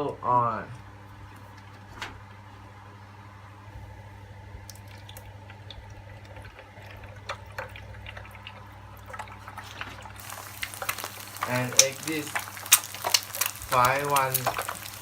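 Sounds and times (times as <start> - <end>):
oil ticking and popping in pan: 4.6 - 15.0.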